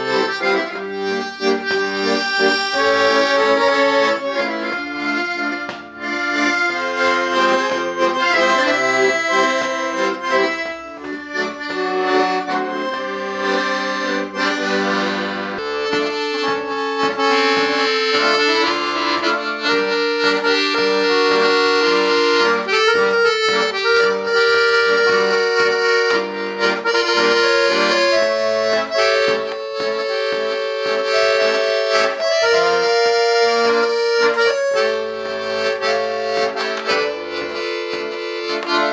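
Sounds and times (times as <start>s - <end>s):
accordion playing a tune: 0.0s - 38.9s.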